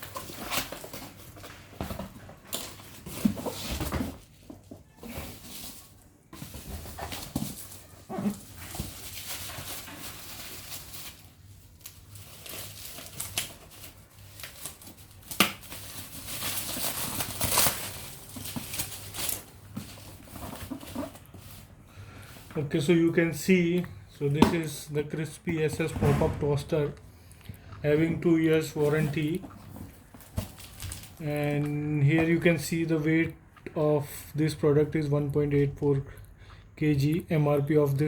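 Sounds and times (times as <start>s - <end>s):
cardboard packaging rustling and tearing: 0.0s - 25.9s, 27.9s - 33.2s.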